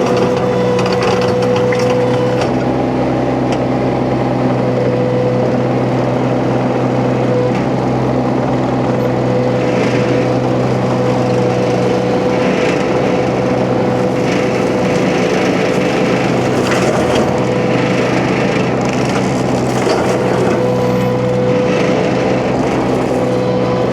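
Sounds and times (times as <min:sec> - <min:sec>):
engine running steadily: 0:00.0 - 0:23.9
flail mulcher chewing brush: 0:10.4 - 0:23.9.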